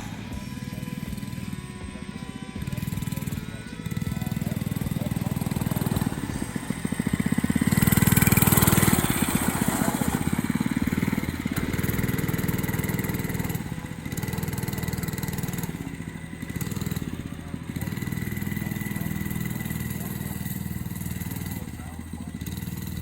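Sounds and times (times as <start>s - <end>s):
engine running and revving: 0.0s - 23.0s.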